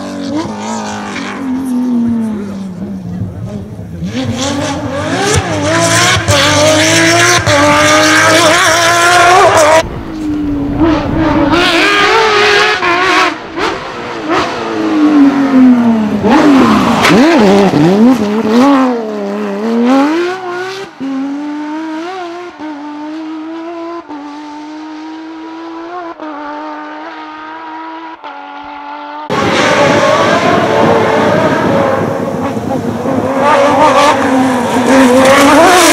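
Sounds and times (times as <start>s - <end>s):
car engine revving hard: 0.0s - 35.9s.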